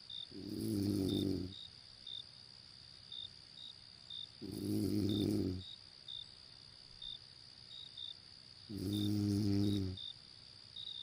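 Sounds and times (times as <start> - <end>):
high insect drone: 0.0 - 11.0
insects chirping: 0.0 - 11.0
person snoring: 0.4 - 1.5, 4.4 - 5.6, 8.7 - 10.0.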